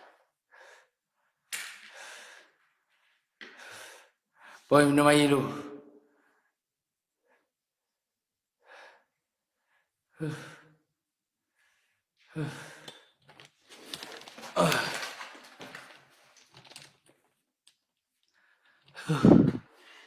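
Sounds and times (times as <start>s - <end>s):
person sighing and heavy breathing: 12.3s - 13.0s, 14.3s - 15.6s, 19.0s - 20.0s
person groaning: 19.0s - 19.6s.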